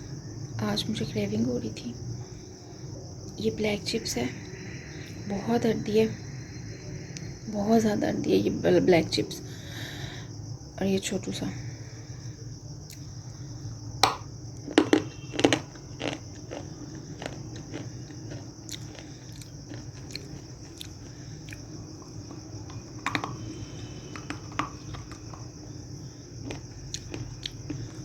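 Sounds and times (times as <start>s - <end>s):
faint hum and hiss: 0.0s - 28.0s
soft crunching chews: 12.8s - 13.5s, 14.1s - 28.0s
crunching bites of hard chips: 14.0s - 28.0s.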